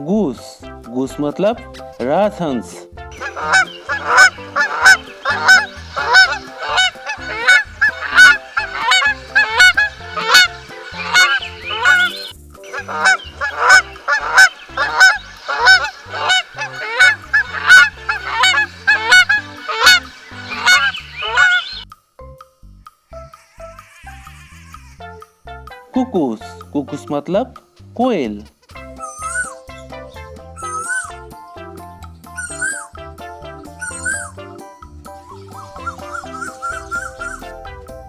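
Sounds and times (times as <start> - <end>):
goose honking: 3.2 - 21.8, 28.9 - 29.6, 30.6 - 31.2, 32.4 - 32.9, 33.8 - 34.4, 35.3 - 37.6.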